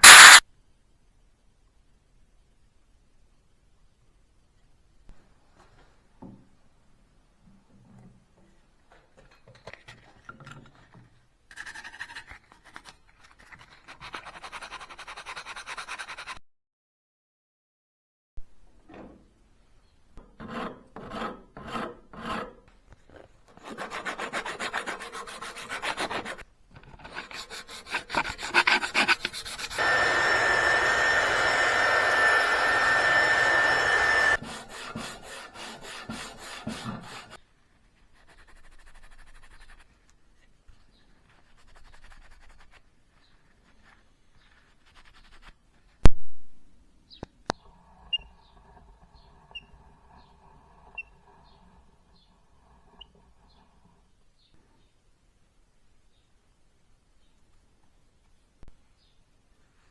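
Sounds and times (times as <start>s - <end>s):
sharp click: 0.0s - 0.4s
rubbing and scraping on metal: 18.9s - 40.0s, 47.6s - 54.2s.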